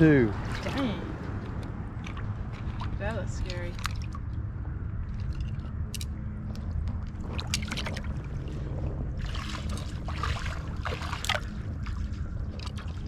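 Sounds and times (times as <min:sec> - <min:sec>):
low rumble: 0:00.0 - 0:13.0
boots splashing through water: 0:07.2 - 0:08.4, 0:09.2 - 0:13.0.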